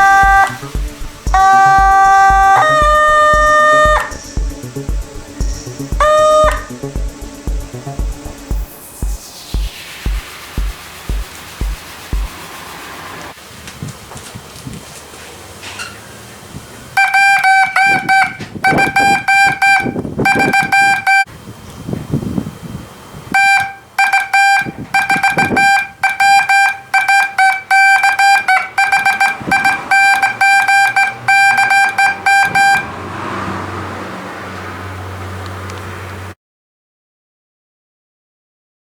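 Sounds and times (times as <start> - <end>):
morse code beeps: 0.0 - 8.6, 17.0 - 21.3, 23.4 - 32.9.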